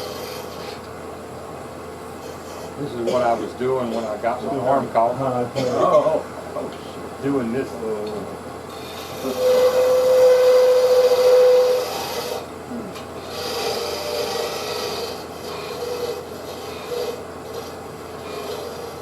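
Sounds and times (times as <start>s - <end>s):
lathe tool scraping wood: 0.0s - 0.9s, 2.2s - 5.1s, 8.7s - 19.0s.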